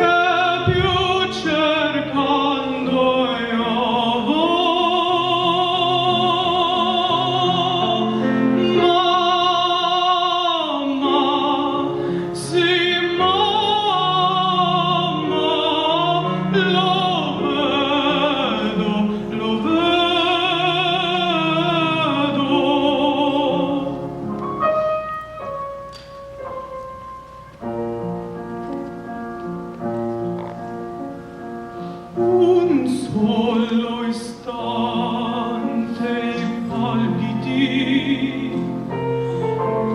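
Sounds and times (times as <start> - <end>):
operatic voice singing: 0.0 - 24.0, 32.2 - 38.8
instrumental accompaniment: 0.0 - 39.9.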